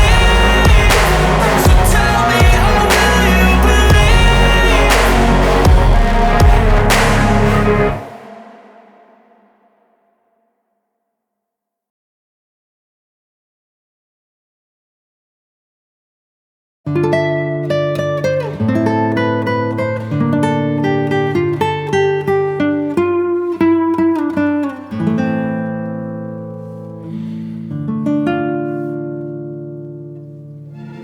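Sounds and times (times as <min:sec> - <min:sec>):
plucked guitar melody: 0:16.9 - 0:31.0.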